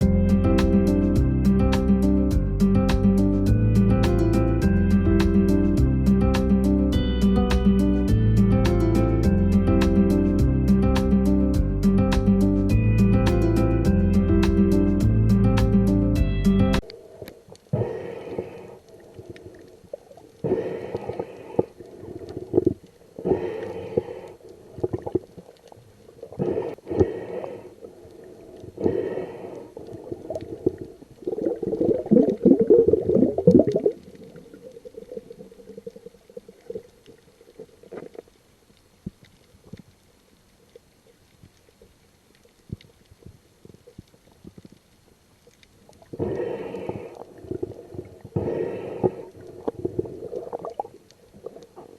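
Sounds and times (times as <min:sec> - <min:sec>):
faint ticks: 0:16.8 - 0:32.4, 0:33.5 - 0:51.9.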